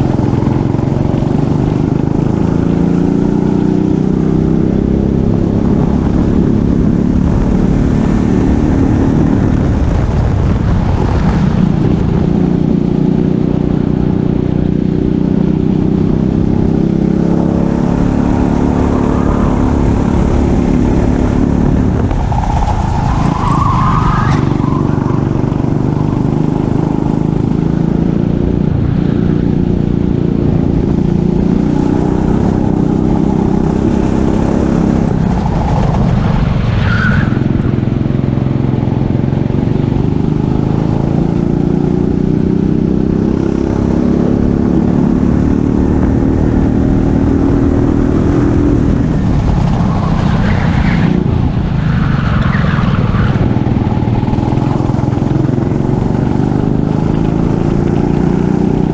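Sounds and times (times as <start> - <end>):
racing kart engine under throttle: 0.0 - 58.9.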